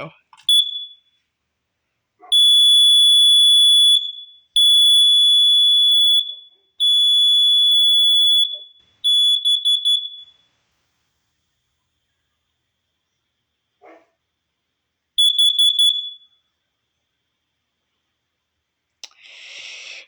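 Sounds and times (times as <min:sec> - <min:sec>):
alarm beeps: 0:00.5 - 0:01.1, 0:02.3 - 0:10.3, 0:15.2 - 0:16.3
piercing alarm tone: 0:15.2 - 0:16.2.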